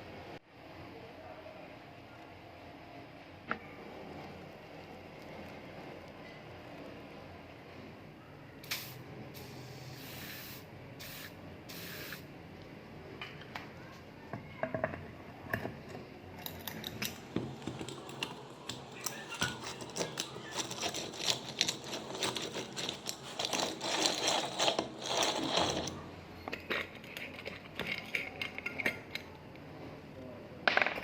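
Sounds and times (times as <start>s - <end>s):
small metal parts clicking and scraping: 16.4s - 29.3s.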